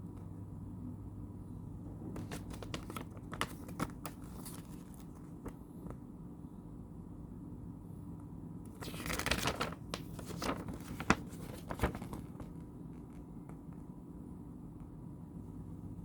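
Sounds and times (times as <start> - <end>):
paper packaging rustling: 2.2 - 5.6, 8.8 - 12.6.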